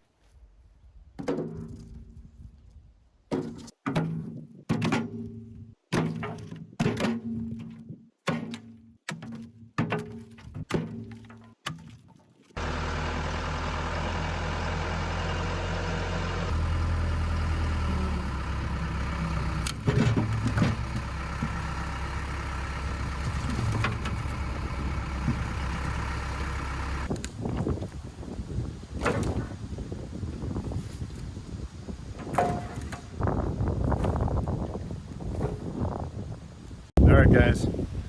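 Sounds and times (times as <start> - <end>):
diesel engine running: 12.6 - 27.2.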